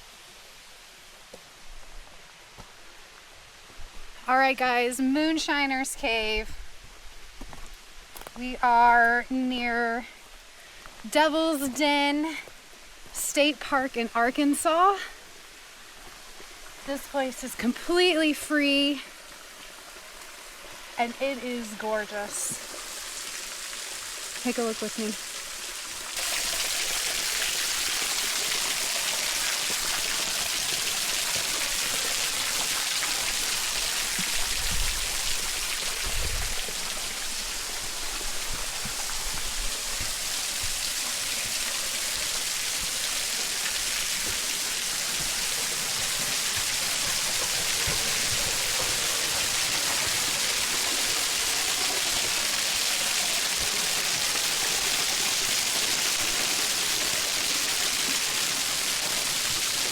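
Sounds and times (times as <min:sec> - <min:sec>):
waterfall splashing onto rocks: 0:17.5 - 0:59.9.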